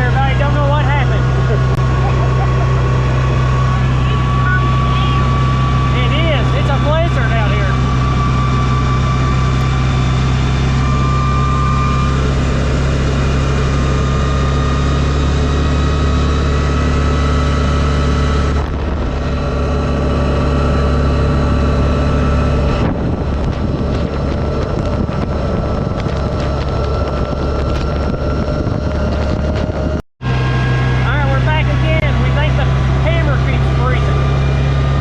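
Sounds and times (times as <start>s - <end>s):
vehicle engine running: 0.0s - 35.0s
wind noise on microphone: 3.2s - 30.9s.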